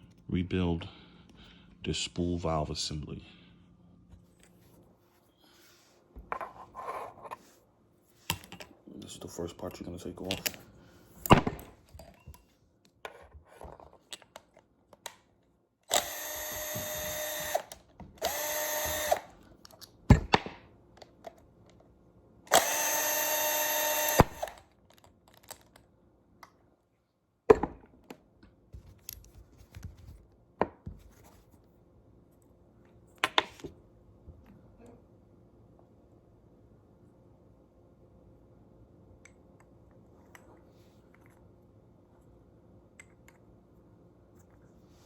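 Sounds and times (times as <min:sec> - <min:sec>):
power drill running: 0:15.9 - 0:19.3, 0:22.5 - 0:24.6.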